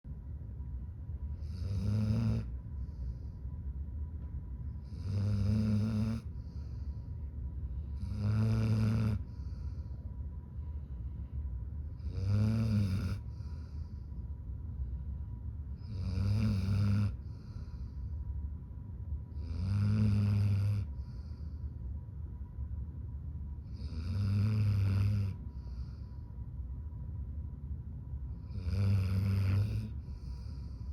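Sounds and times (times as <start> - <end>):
dog snoring: 1.3 - 3.3, 4.8 - 7.0, 7.8 - 9.9, 11.9 - 14.1, 15.8 - 18.0, 19.3 - 21.6, 23.6 - 26.2, 28.3 - 30.9.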